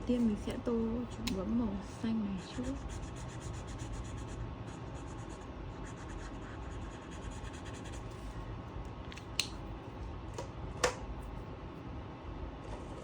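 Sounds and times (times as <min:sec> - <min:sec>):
coloring tool scratching on paper: 0:02.4 - 0:08.0.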